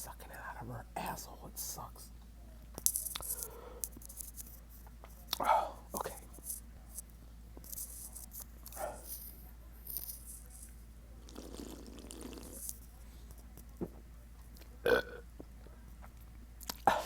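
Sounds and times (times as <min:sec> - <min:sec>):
man burping: 0:14.8 - 0:15.2.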